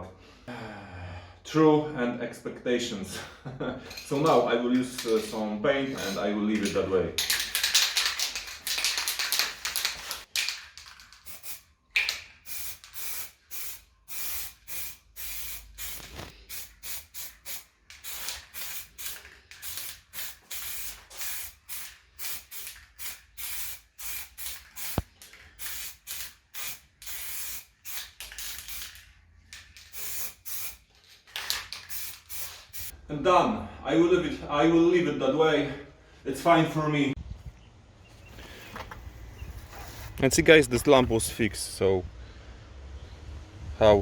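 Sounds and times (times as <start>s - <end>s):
spray paint hissing bursts: 7.3s - 32.9s.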